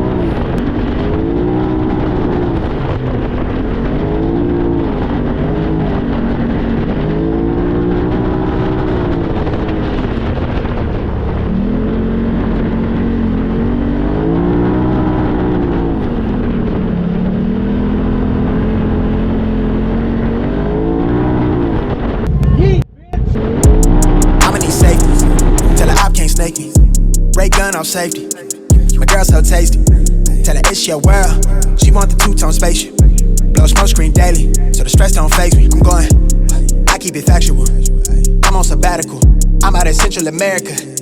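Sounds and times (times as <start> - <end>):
engine revving up and down: 0.0 - 40.9.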